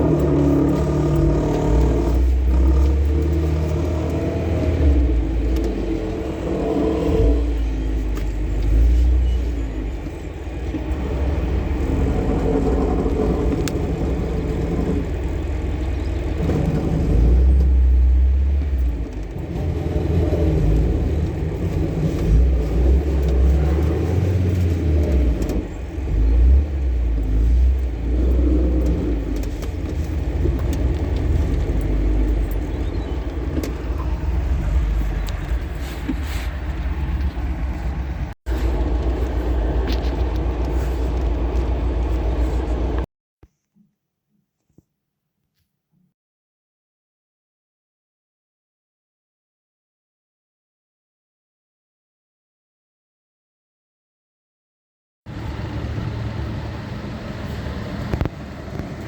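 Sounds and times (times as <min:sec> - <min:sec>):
car engine: 0:00.0 - 0:43.1, 0:55.3 - 0:59.0
road rumble: 0:00.0 - 0:43.1, 0:55.3 - 0:59.0.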